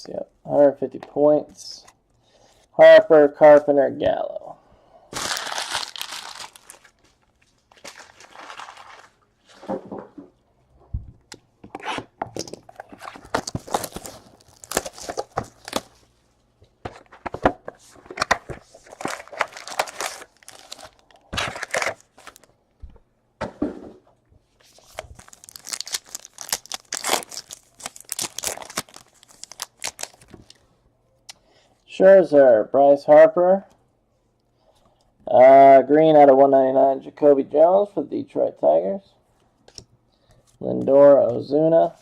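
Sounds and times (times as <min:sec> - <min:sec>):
foil wrappers tearing and crinkling: 0:05.1 - 0:07.0, 0:07.7 - 0:09.2, 0:13.2 - 0:16.0, 0:18.2 - 0:22.5, 0:24.8 - 0:30.6.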